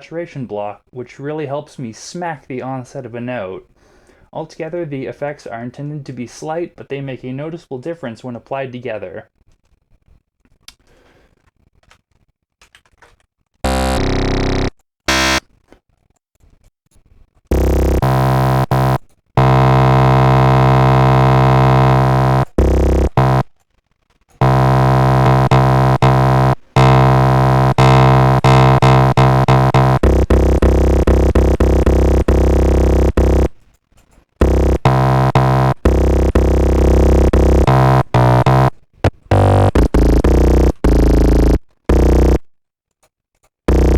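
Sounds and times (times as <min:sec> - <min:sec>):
synthesizer low held notes: 0:13.7 - 0:15.4, 0:17.5 - 0:23.4, 0:24.4 - 0:33.6, 0:34.4 - 0:42.4.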